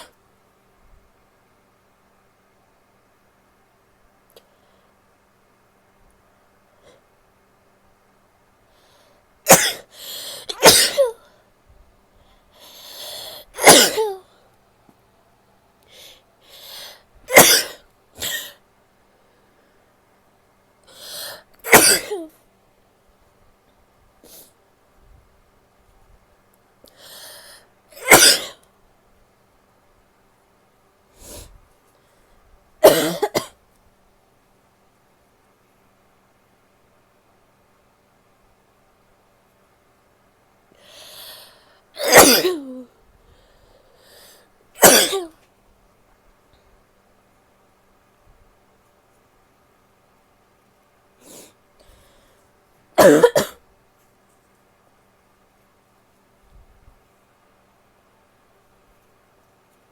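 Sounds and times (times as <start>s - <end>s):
woman sneezing: 9.5s - 9.9s, 10.5s - 11.2s, 13.3s - 14.2s, 17.3s - 18.6s, 21.6s - 22.3s, 28.0s - 28.6s, 42.0s - 42.9s, 44.8s - 45.4s
woman coughing: 9.5s - 11.2s, 13.6s - 14.2s, 17.3s - 18.6s, 21.6s - 22.3s, 28.0s - 28.6s, 32.8s - 33.6s, 42.0s - 42.9s, 44.8s - 45.4s, 53.0s - 53.6s
breath in: 9.9s - 10.5s, 12.2s - 13.5s, 15.9s - 17.1s, 26.9s - 27.7s.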